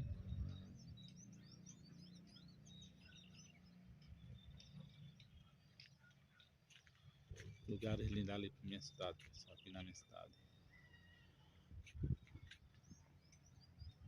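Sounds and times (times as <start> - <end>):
low steady rumble: 0.0 - 1.2
small birds chirping: 0.0 - 14.0.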